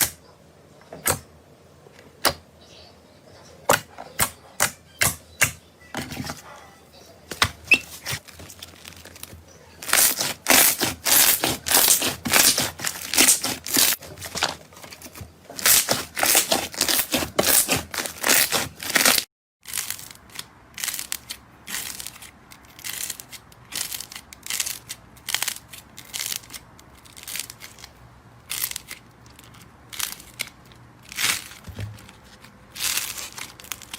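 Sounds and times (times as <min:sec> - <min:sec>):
slime popping and crackling: 0:09.8 - 0:14.4, 0:15.6 - 0:27.9.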